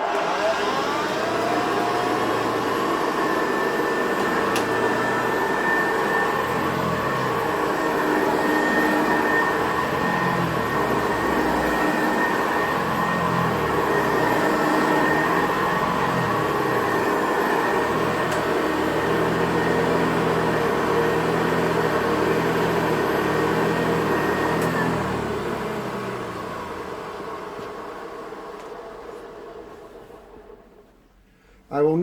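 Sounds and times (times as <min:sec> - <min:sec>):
vacuum cleaner motor running: 0:00.0 - 0:30.8.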